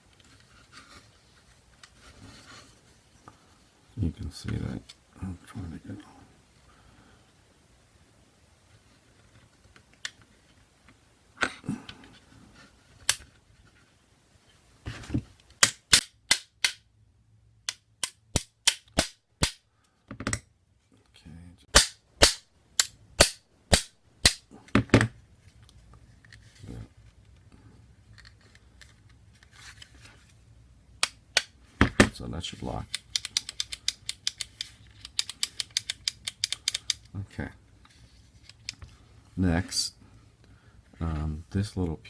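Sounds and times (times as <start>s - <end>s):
metal clicks of gun parts: 32.9s - 37.1s.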